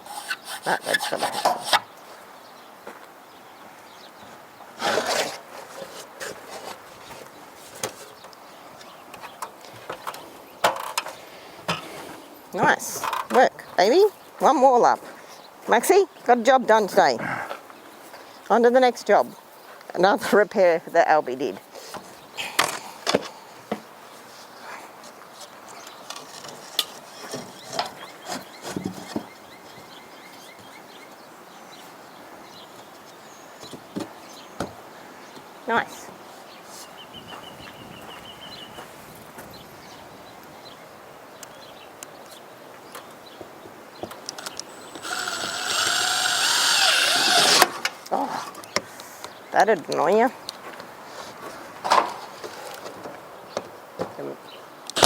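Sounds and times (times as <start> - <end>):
scrape on timber: 0.0 - 1.8, 4.8 - 8.1, 44.4 - 47.8
faint outdoor background: 0.0 - 55.0.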